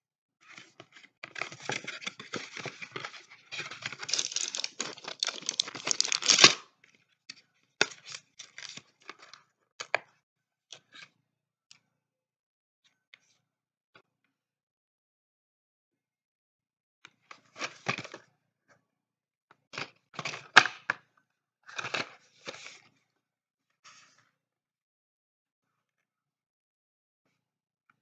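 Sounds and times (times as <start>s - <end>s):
packaging tearing and crinkling: 3.7s - 6.6s.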